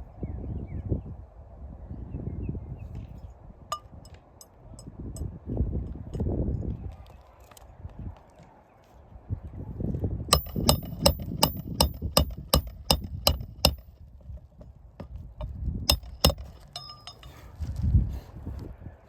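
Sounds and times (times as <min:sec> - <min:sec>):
hammer striking metal: 0:10.3 - 0:13.9, 0:15.9 - 0:17.4.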